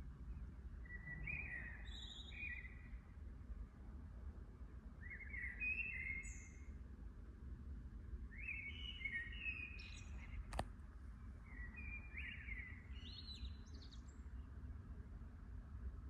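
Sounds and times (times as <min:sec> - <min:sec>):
songbirds singing: 0:00.2 - 0:03.1, 0:05.0 - 0:06.8, 0:08.3 - 0:15.2
sharp click: 0:10.5 - 0:10.7.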